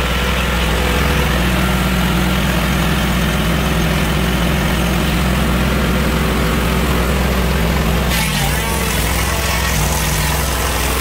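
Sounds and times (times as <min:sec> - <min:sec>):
sawmill engine droning: 0:00.0 - 0:11.0.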